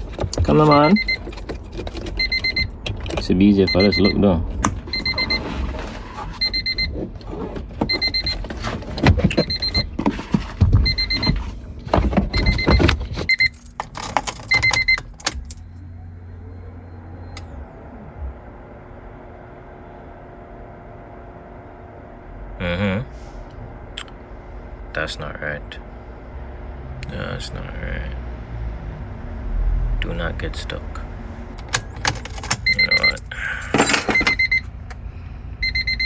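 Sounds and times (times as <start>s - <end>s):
car warning chime beeping: 0.2s - 10.0s, 10.7s - 11.4s, 12.0s - 17.6s, 31.6s - 34.7s, 35.6s - 36.0s
keys jangling: 12.4s - 15.8s, 31.6s - 34.4s.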